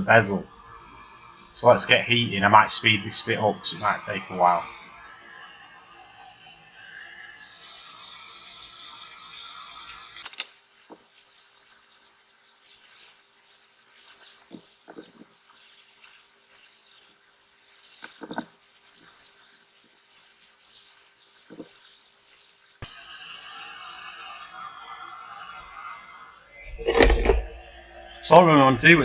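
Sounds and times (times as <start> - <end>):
hot air gun hissing: 5.6 - 22.8.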